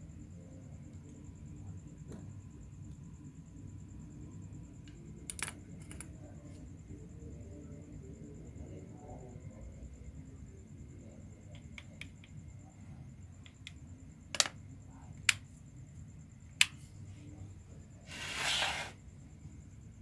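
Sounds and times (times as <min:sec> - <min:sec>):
hiss: 0:18.0 - 0:19.0.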